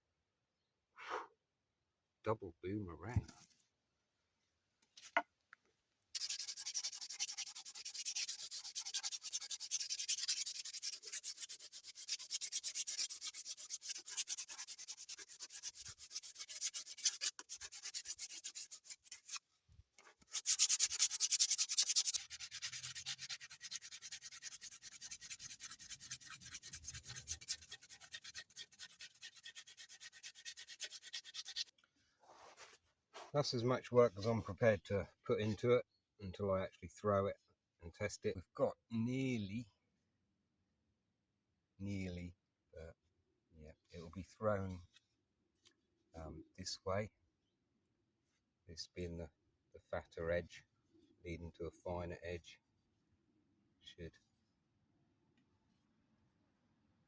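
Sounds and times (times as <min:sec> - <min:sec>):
hand tool scraping wood: 0:06.2 - 0:19.4, 0:20.1 - 0:31.7.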